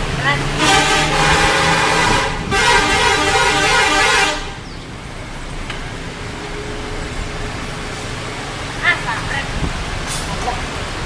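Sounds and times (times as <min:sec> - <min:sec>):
bus multi-tone horn blaring: 0:00.6 - 0:04.6.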